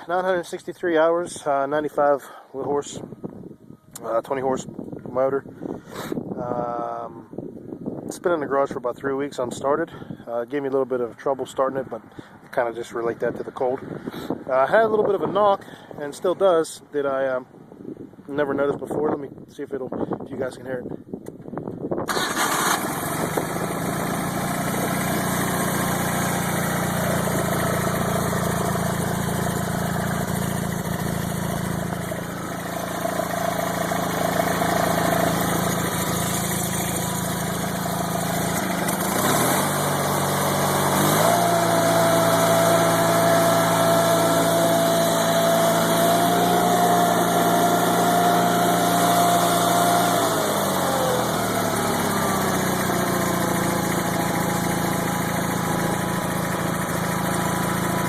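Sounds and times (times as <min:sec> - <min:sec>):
tractor engine running: 0:22.1 - 0:58.0.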